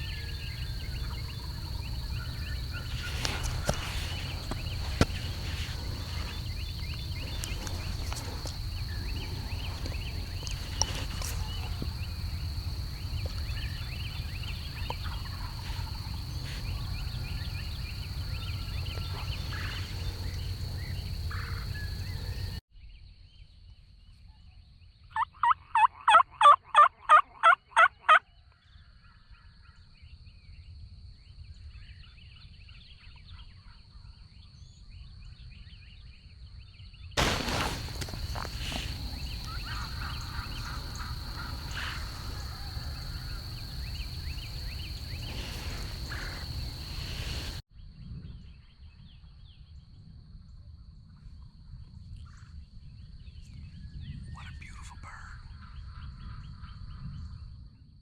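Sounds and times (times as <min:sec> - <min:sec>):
turkey yelps: 0:25.2 - 0:28.2
faint small bird chirps: 0:53.3 - 0:57.6.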